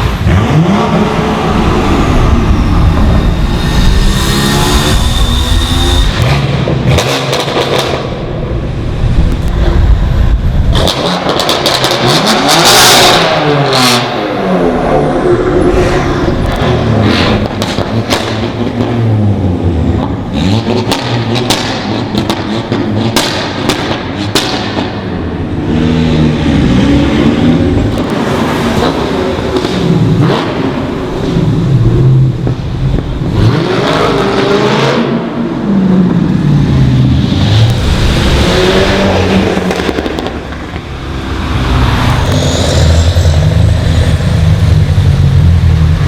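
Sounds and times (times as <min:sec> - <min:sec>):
cars accelerating past: 0:00.0 - 0:08.3, 0:20.0 - 0:46.0
exhaust pops and crackles: 0:09.2 - 0:09.8, 0:16.4 - 0:19.0, 0:20.9 - 0:24.9, 0:39.0 - 0:41.0.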